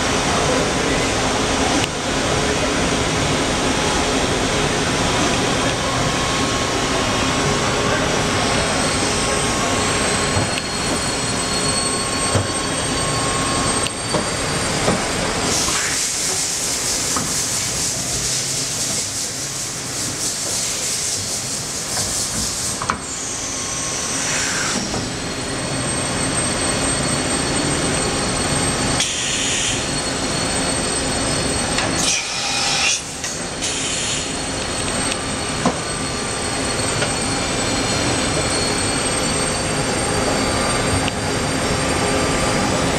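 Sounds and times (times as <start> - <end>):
machine hiss: 15.4 - 25.0, 29.0 - 30.0, 32.0 - 34.6
falling whine: 23.2 - 42.9
machine humming with high whines: 23.2 - 42.9.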